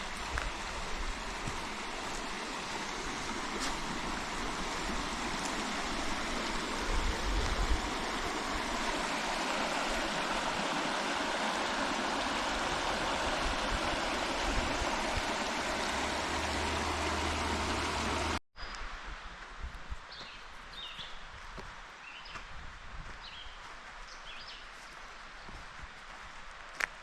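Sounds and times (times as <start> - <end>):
stream water rushing: 0.0 - 18.4.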